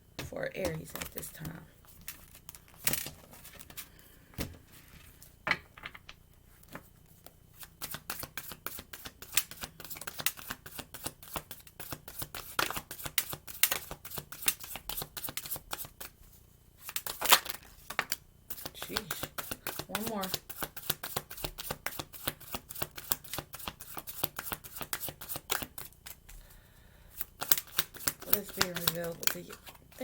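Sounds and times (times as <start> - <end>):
cards being shuffled: 0.6 - 4.6, 16.8 - 26.3, 27.2 - 30.0.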